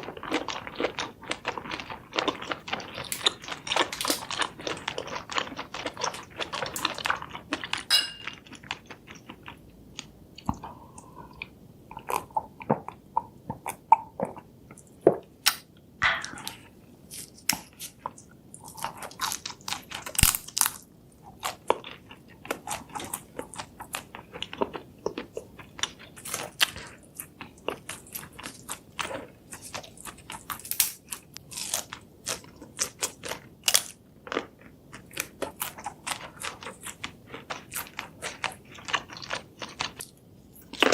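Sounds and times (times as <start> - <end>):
chewing crunchy food: 0.0 - 40.9.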